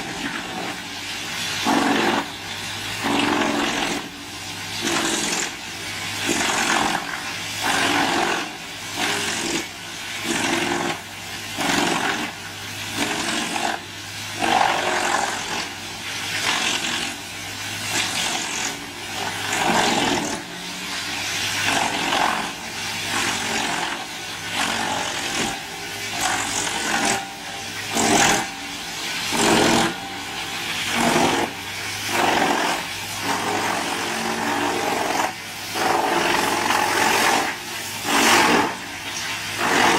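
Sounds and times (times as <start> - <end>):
wood chipper running: 0.0 - 39.9
wood crunching in chipper: 1.6 - 2.4, 3.0 - 4.1, 4.8 - 5.6, 6.2 - 13.8, 14.4 - 17.2, 17.8 - 39.9.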